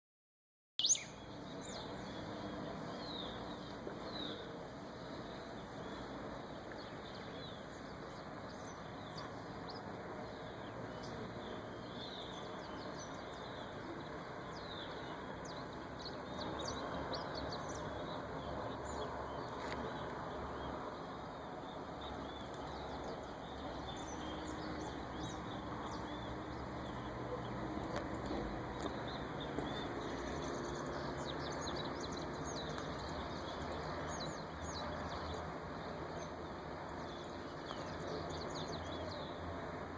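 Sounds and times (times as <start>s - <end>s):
small birds chirping: 0.8s - 39.9s
steady background noise: 1.1s - 39.9s.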